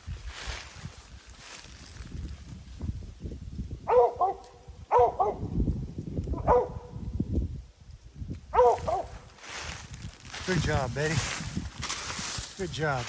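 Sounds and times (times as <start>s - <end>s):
wind rumble on microphone: 0.0s - 13.0s
dog barking: 3.9s - 5.5s, 6.4s - 7.0s, 8.5s - 9.2s.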